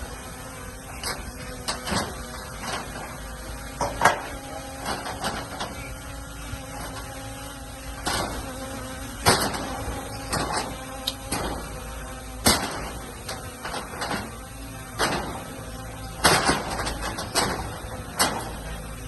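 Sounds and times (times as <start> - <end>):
diesel engine running: 0.0 - 19.0
metallic clanks and knocks: 1.0 - 5.9, 9.2 - 11.8, 12.4 - 18.8.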